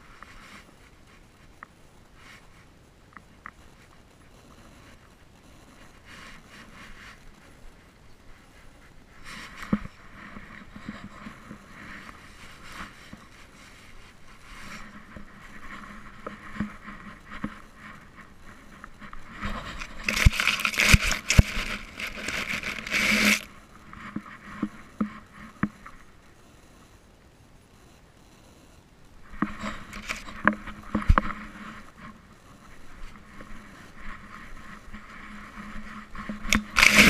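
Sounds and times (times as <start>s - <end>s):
camera housing scraping and rubbing: 9.2s - 24.7s, 29.3s - 32.2s, 32.9s - 37.0s.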